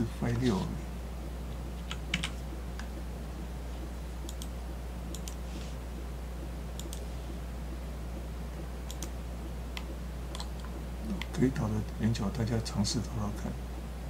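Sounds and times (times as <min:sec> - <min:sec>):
low electrical hum: 0:00.0 - 0:14.0
computer mouse clicking: 0:01.5 - 0:03.1, 0:03.8 - 0:05.4, 0:06.8 - 0:07.1, 0:08.8 - 0:11.4.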